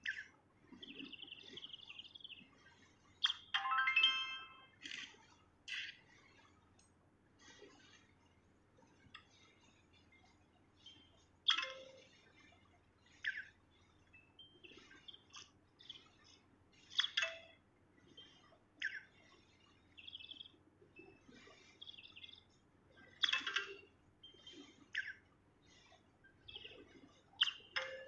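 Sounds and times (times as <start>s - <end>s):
songbird chirping: 0.0s - 6.8s, 8.8s - 28.0s.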